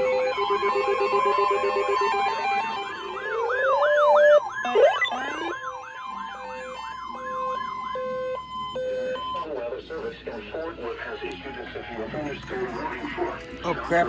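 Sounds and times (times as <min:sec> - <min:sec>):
fast wailing siren: 0:00.0 - 0:09.6
steady high alarm tone: 0:00.0 - 0:10.4
rising electronic glide: 0:03.2 - 0:05.7
low two-note beeping: 0:04.6 - 0:05.6.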